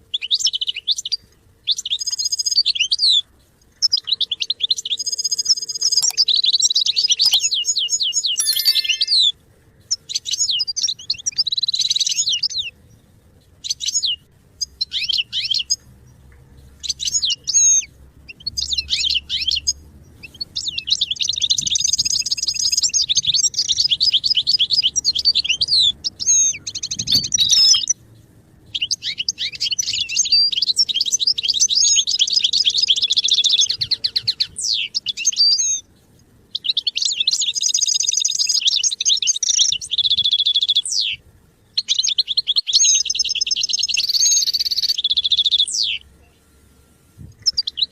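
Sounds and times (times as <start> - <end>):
goldfinch twittering and trilling: 8.4 - 9.3, 25.1 - 27.9.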